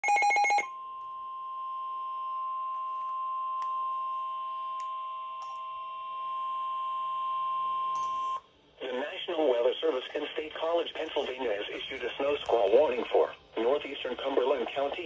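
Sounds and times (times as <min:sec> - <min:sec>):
static clicks: 0:11.7 - 0:13.4.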